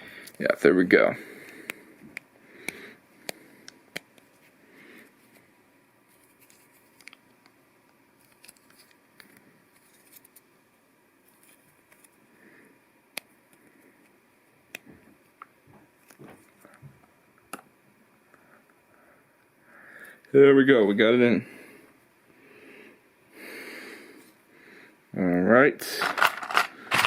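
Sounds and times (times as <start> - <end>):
plastic parts clicking: 26.0 - 27.0.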